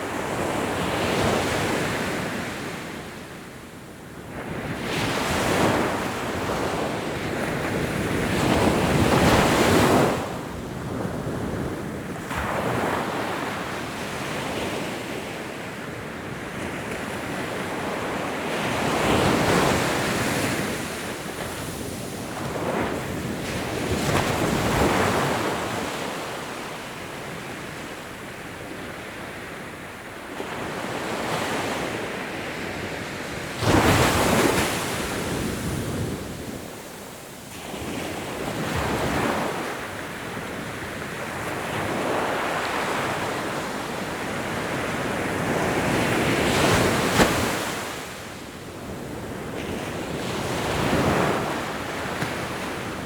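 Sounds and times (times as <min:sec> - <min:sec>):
ocean waves breaking on beach: 0:04.2 - 0:53.0.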